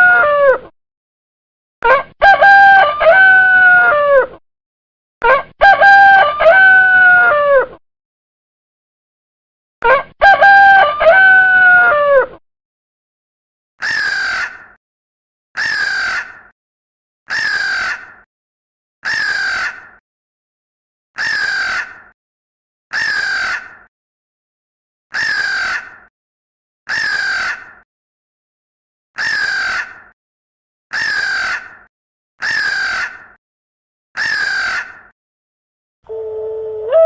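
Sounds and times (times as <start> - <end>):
bird harsh call: 32.4 - 33.2.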